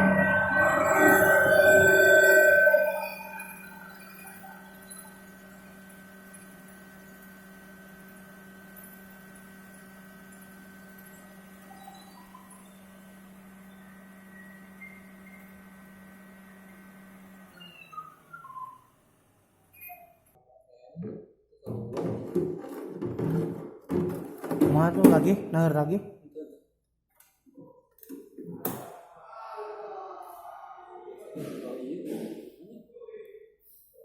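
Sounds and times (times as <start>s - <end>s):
faint high tone: 0.0s - 4.7s
ringing chime: 0.0s - 5.2s.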